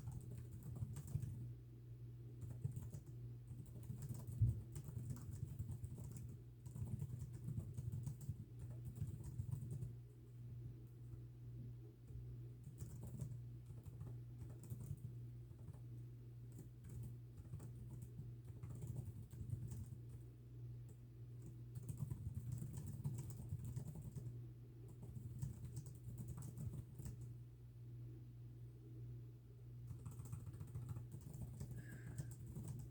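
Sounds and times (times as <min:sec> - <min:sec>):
fast typing on keyboard: 0:00.0 - 0:01.5, 0:02.3 - 0:10.0, 0:12.1 - 0:15.9, 0:16.5 - 0:20.3, 0:20.9 - 0:27.3, 0:29.8 - 0:32.9
steady low hum: 0:00.0 - 0:32.9.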